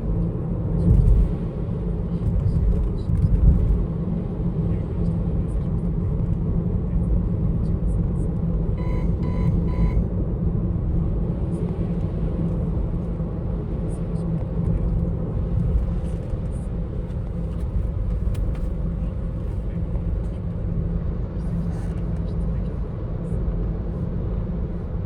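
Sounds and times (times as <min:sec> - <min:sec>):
road and tyre rumble in car: 0:00.0 - 0:25.0
dashboard chime beeps: 0:08.8 - 0:10.1.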